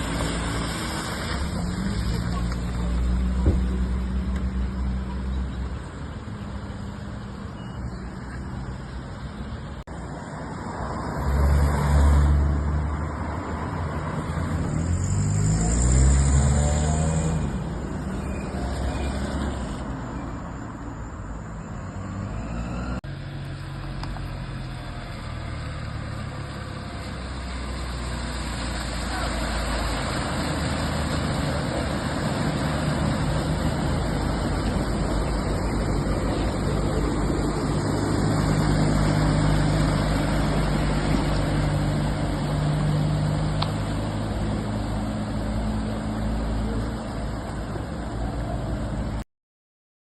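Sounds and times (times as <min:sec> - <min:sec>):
vehicles driving by: 0:00.0 - 0:49.2.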